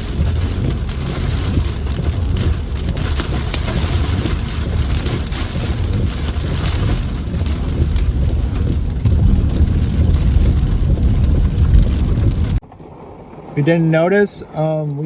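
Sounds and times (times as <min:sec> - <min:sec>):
steady low rumble: 0:00.0 - 0:12.6
rain and hail on a car roof: 0:00.0 - 0:13.6.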